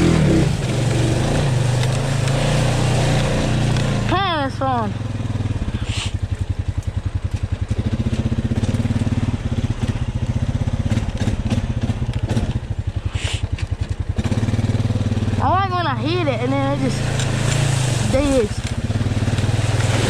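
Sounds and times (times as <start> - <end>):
atv engine pulsing under load: 0.0 - 20.0.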